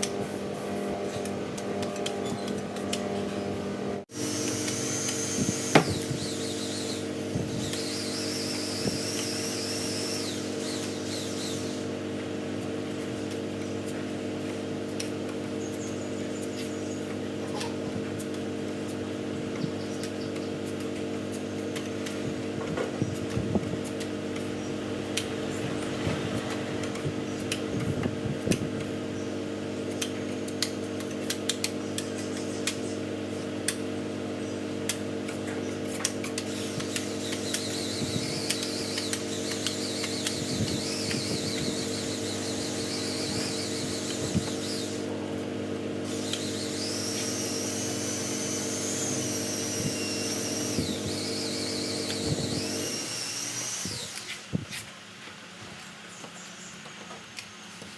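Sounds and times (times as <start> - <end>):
machine hum: 0.0 - 12.3, 36.4 - 54.3
sharp clicks: 36.0 - 44.9.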